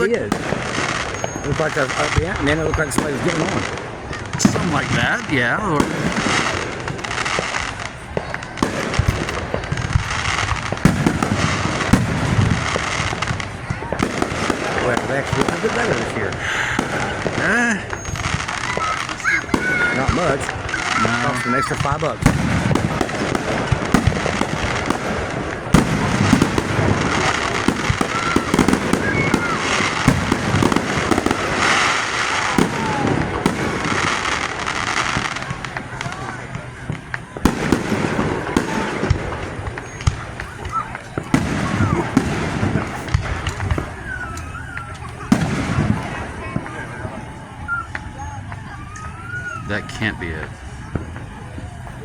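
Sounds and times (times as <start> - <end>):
fireworks bangs and crackles: 0.0 - 52.0.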